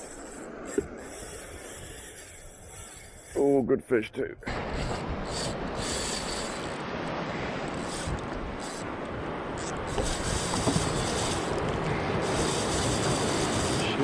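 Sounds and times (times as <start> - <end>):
wind on microphone: 4.4 - 14.0
sea waves washing: 4.5 - 14.0.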